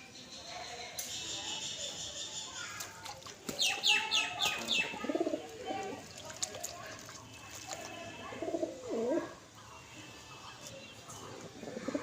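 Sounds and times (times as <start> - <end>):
small birds chirping: 0.0 - 7.8
dove cooing: 4.5 - 6.0, 11.3 - 12.0.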